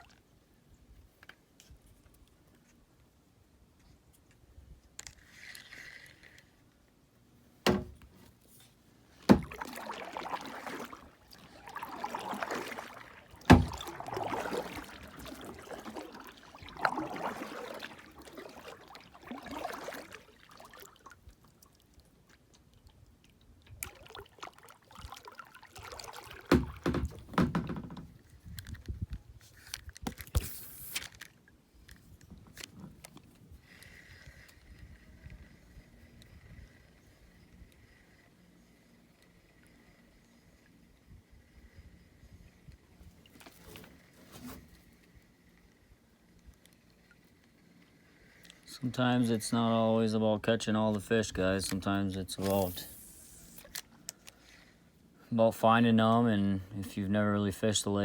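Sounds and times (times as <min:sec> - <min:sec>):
water sloshing around kayak: 0:07.5 - 0:42.1, 0:42.7 - 0:58.0
sharp knocks: 0:07.7 - 0:08.1, 0:09.3 - 0:09.6, 0:13.5 - 0:13.8.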